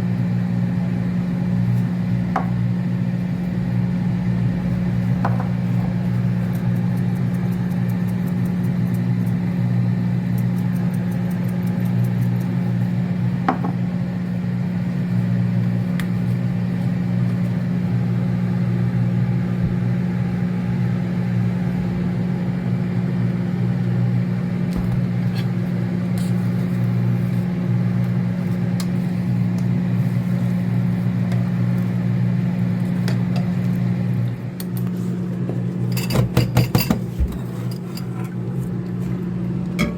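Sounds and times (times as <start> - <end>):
kitchen appliance humming: 0.0 - 39.9.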